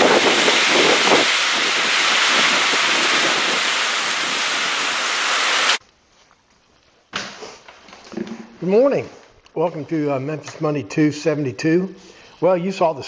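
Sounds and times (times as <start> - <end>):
heavy rain with wind: 0.0 - 5.8.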